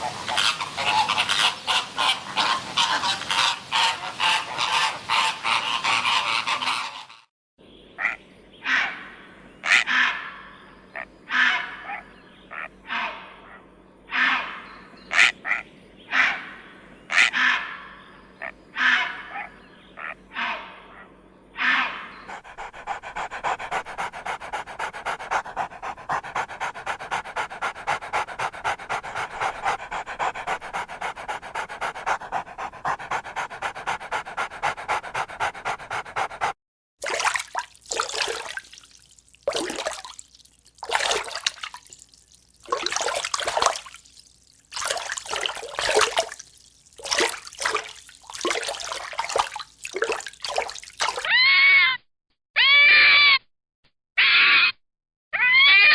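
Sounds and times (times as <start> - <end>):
dog breathy bursts: 22.3 - 36.6, 37.2 - 51.3
dog panting: 22.3 - 36.6.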